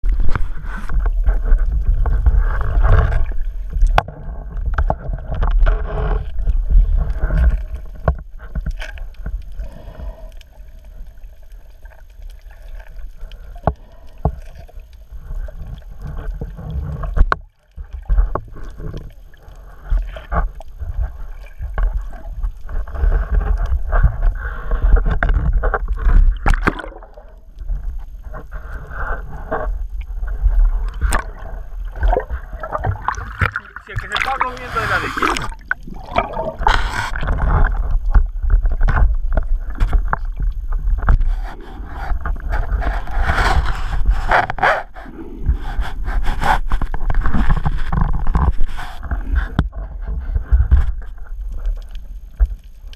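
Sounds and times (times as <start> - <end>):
muffled water movement: 0.0 - 52.9.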